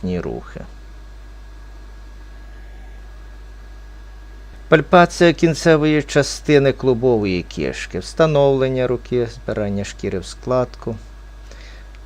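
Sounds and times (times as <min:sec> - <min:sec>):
low electrical hum: 0:00.0 - 0:12.0
thin high whine: 0:00.0 - 0:12.0.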